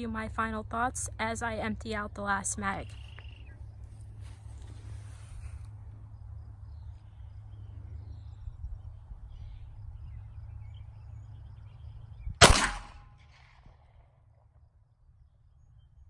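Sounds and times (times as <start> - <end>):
steady low rumble: 0.0 - 16.0
pistol shot: 12.4 - 14.0.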